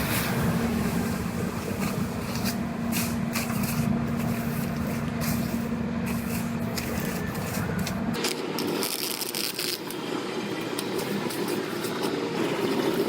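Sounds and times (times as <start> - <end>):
hissing scraping strokes: 0.0 - 10.0.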